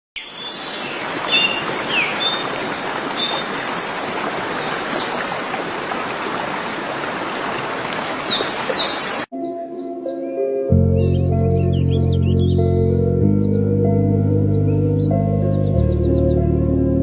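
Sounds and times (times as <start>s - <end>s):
small birds chirping: 0.2s - 6.4s, 7.0s - 10.2s
stream running: 0.2s - 9.3s.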